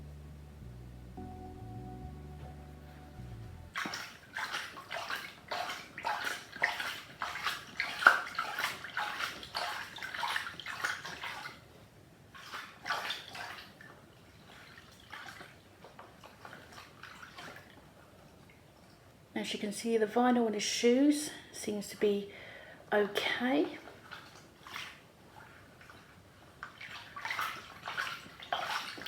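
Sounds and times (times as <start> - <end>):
water sloshing and splashing: 3.7 - 19.3, 23.0 - 29.0.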